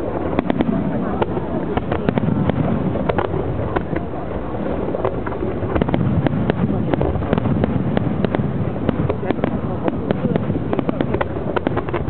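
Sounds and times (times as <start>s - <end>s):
fireworks rumbling bursts: 0.0s - 12.0s
sharp firework cracks: 0.0s - 12.0s.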